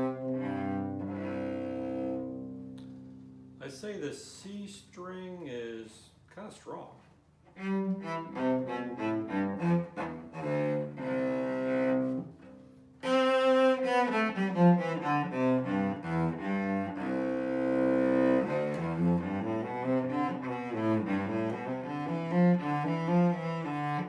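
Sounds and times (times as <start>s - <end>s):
bowed cello melody: 0.0s - 3.6s, 7.4s - 24.0s.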